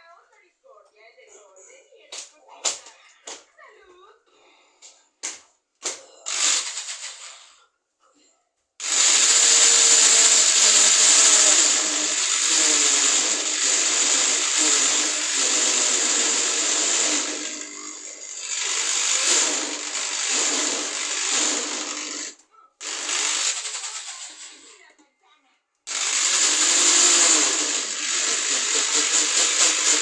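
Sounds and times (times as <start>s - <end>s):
electric drill whining: 6.3s - 7.1s, 8.8s - 24.8s, 25.9s - 30.0s.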